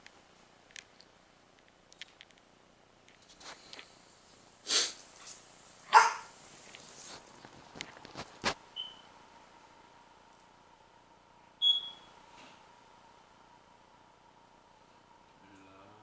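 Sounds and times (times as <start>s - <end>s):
dog barking: 5.9s - 6.3s.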